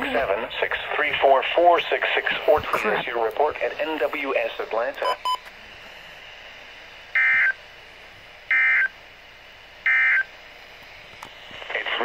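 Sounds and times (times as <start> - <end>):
faint radio hiss: 0.0 - 6.5, 10.7 - 12.0.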